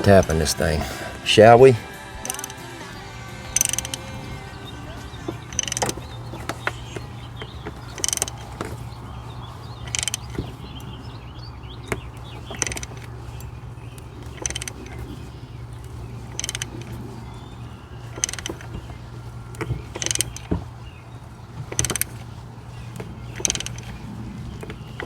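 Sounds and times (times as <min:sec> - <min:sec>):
ratchet clicking: 0:02.2 - 0:02.7, 0:03.4 - 0:08.8, 0:09.8 - 0:10.6, 0:11.8 - 0:13.6, 0:14.2 - 0:15.2, 0:15.8 - 0:17.2, 0:18.0 - 0:20.6, 0:21.6 - 0:22.3, 0:22.9 - 0:24.0.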